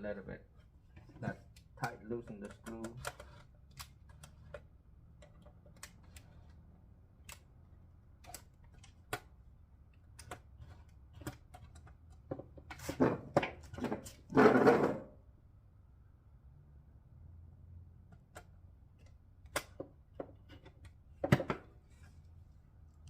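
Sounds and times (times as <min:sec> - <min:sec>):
plastic scraping and rubbing: 0:00.6 - 0:04.7
screwdriver and plastic clicks: 0:01.5 - 0:04.6, 0:07.2 - 0:07.5.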